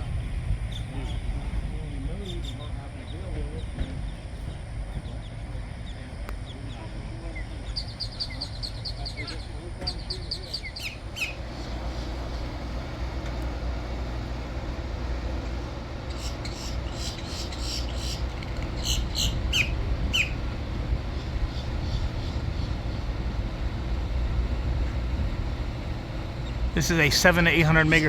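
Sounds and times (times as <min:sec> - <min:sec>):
steady low rumble: 0:00.0 - 0:28.0
birds chirping and squawking: 0:02.2 - 0:12.4, 0:16.0 - 0:20.5, 0:21.1 - 0:23.2.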